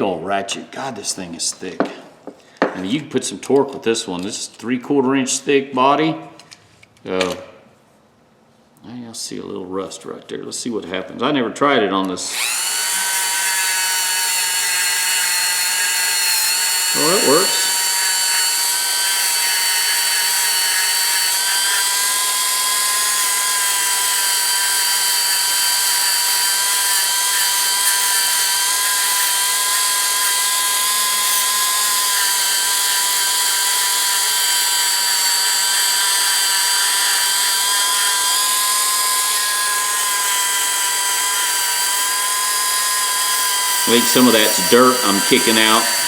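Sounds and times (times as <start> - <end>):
power tool whining: 12.0 - 46.0.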